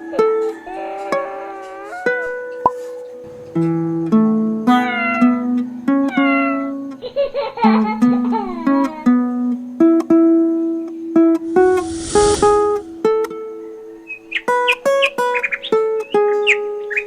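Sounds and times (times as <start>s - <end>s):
hissing noise burst: 11.4s - 13.0s.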